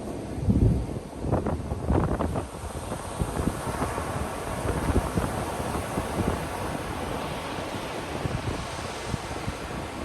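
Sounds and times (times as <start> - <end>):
ocean surf on beach: 0.0 - 10.0
wind gusting on microphone: 0.0 - 10.0.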